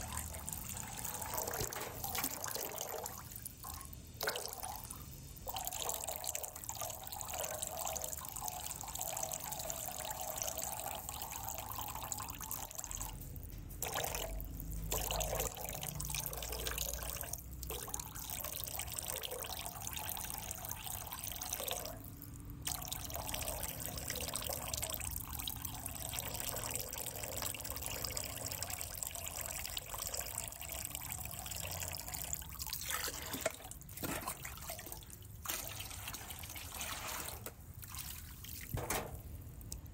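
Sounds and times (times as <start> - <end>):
aquarium water trickling: 0.0 - 39.9.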